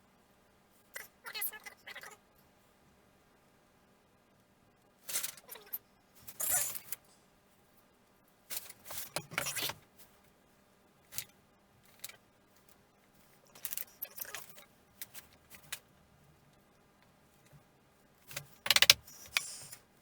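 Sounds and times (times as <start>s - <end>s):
clicks: 18.3s - 19.8s.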